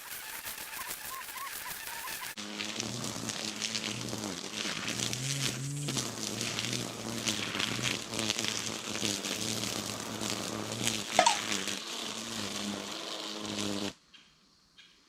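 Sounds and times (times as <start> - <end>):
string trimmer buzzing: 4.2 - 13.9
brief sharp sound: 11.2 - 11.5.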